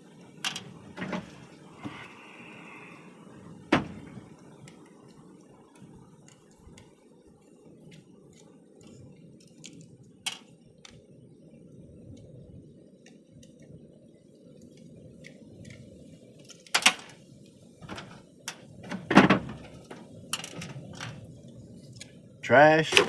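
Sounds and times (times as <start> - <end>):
parts knocking and clattering: 0.4 - 2.0, 17.8 - 21.2.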